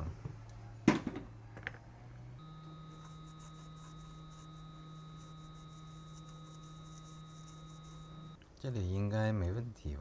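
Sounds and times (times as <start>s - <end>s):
faint electrical hum: 0.0s - 10.0s
thin high whine: 2.4s - 8.4s.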